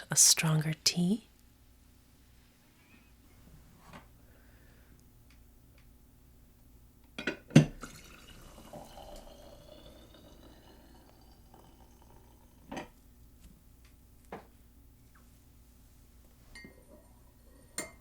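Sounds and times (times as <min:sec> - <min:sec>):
hot water pouring into mug: 0:07.8 - 0:12.8.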